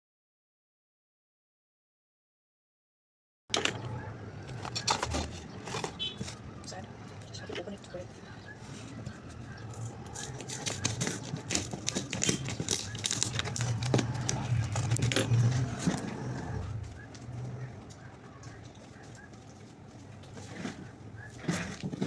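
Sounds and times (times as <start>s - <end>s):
cardboard box scraping and tearing: 9.8s - 16.7s.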